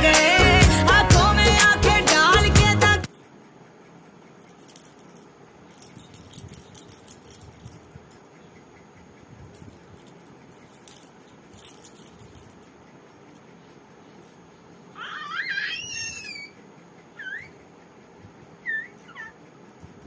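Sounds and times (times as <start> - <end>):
low background hum: 0.0 - 20.0
faint light clicks and rattles: 3.1 - 15.0.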